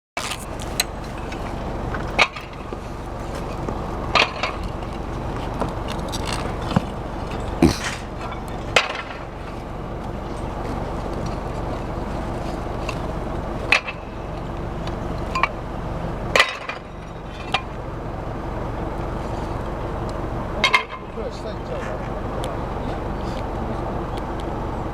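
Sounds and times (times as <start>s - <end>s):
roof tiles clacking: 0.2s - 14.0s
steady background rumble: 0.2s - 24.9s.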